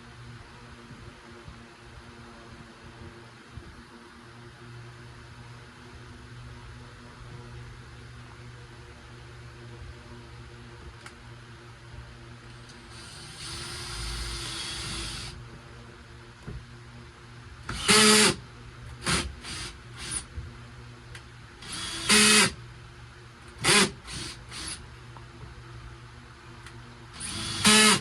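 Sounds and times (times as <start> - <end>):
power drill whirring: 12.8 - 15.4, 17.7 - 18.4, 19.0 - 20.3, 21.6 - 22.6, 23.6 - 24.8, 27.2 - 28.0.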